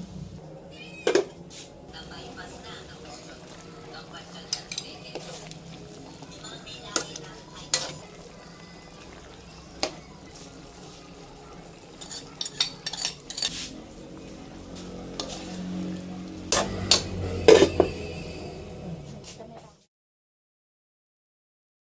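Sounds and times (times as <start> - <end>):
metal utensil scraping a pan: 4.4 - 8.2, 11.9 - 18.5.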